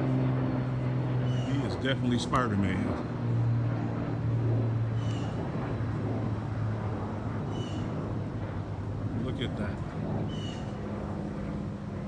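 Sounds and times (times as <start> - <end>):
distant road traffic drone: 0.0 - 12.0.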